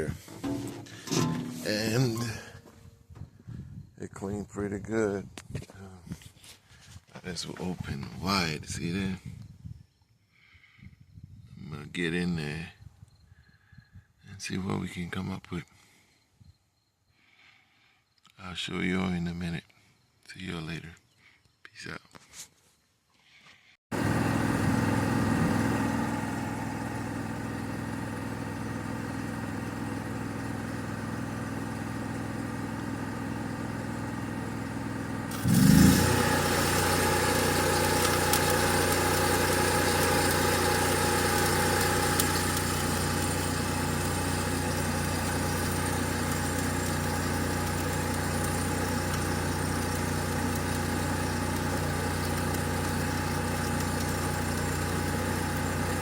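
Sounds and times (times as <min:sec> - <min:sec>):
welder engine running: 0:23.9 - 0:56.0.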